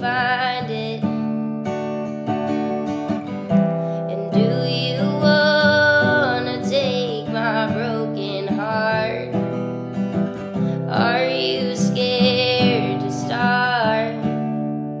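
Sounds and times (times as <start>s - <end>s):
person singing: 0.0s - 1.2s, 4.0s - 9.4s, 10.7s - 14.4s
strummed acoustic guitar: 0.0s - 15.0s.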